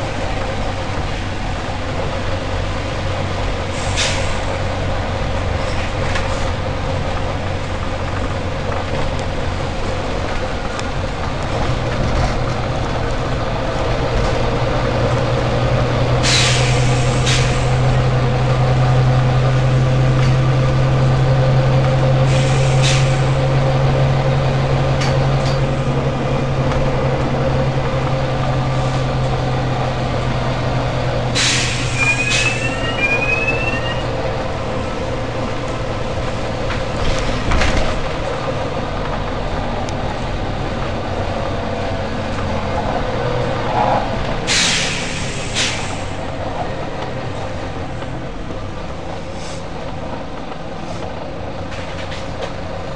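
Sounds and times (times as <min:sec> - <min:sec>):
bus diesel engine humming: 0:00.0 - 0:52.9
air brake hisses: 0:03.7 - 0:04.6, 0:16.2 - 0:17.8, 0:22.2 - 0:23.4, 0:31.4 - 0:34.0, 0:44.5 - 0:46.2, 0:49.3 - 0:49.7.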